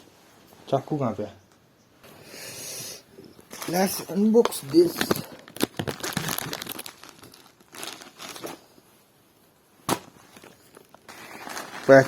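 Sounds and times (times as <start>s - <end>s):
packaging crinkling and tearing: 3.4s - 8.7s, 9.9s - 12.0s.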